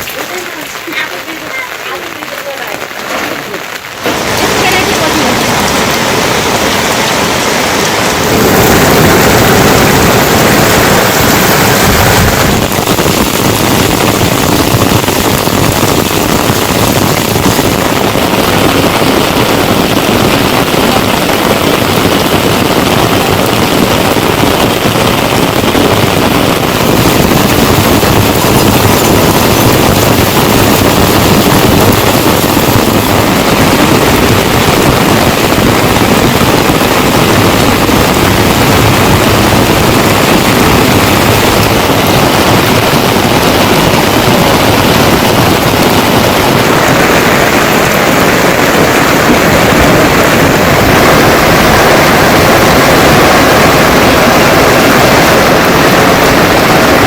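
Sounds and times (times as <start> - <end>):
heavy rain falling: 0.0 - 57.0.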